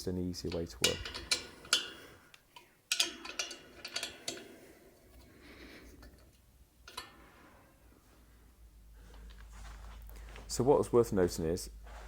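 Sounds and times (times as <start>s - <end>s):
spanner clicking against bolt: 2.9s - 4.4s.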